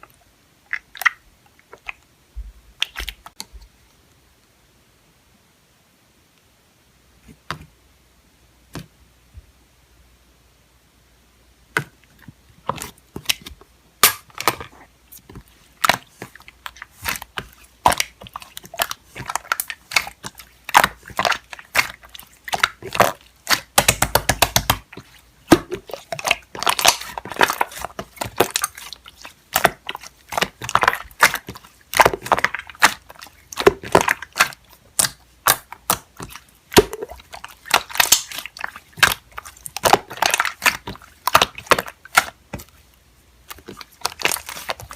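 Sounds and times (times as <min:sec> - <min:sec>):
slime squishing and popping: 0:02.8 - 0:03.4, 0:12.6 - 0:42.8, 0:43.4 - 0:44.9.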